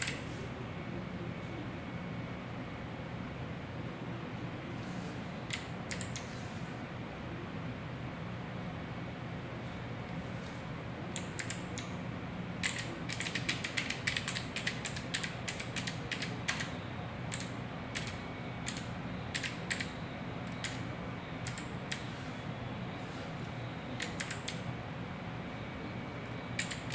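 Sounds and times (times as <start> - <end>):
mechanical keyboard clicking: 0.0 - 0.2, 5.5 - 6.2, 11.2 - 11.9, 12.6 - 16.7, 17.3 - 19.9, 20.5 - 20.8, 21.4 - 22.0, 24.0 - 24.6, 26.6 - 26.9.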